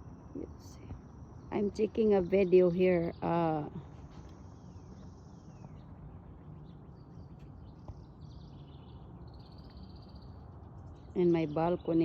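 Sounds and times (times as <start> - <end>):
bird chirps: 0.2 - 12.0.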